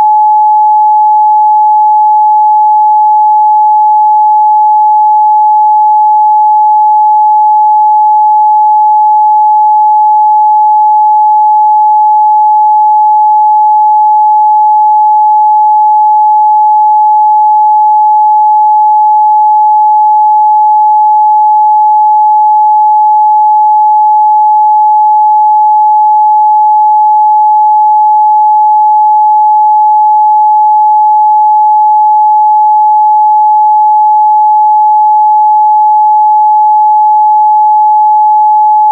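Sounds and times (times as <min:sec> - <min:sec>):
sine-wave test tone: 0:00.0 - 0:38.9.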